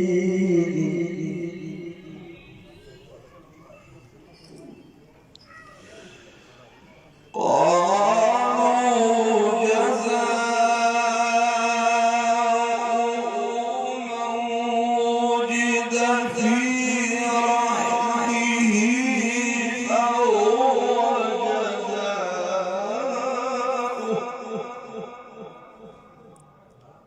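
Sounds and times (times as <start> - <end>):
man reciting melodically: 0.0 - 3.3, 7.3 - 27.0.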